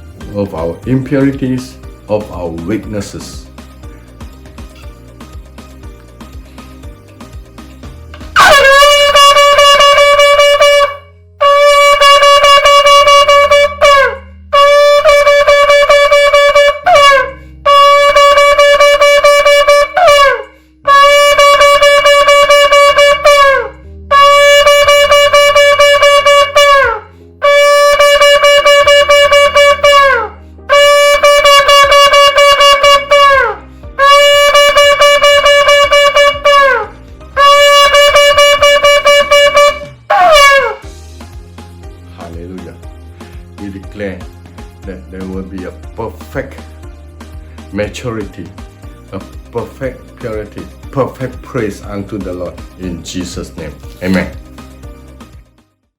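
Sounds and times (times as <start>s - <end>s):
shofar blasts: 8.3s - 41.0s
breath: 17.4s - 17.6s, 20.5s - 20.9s, 33.7s - 33.9s, 43.1s - 43.5s.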